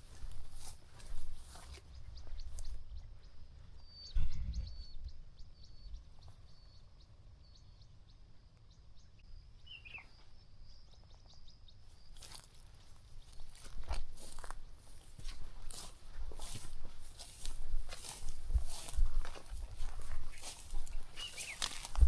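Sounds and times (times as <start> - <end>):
crackling rustle: 12.1 - 22.0.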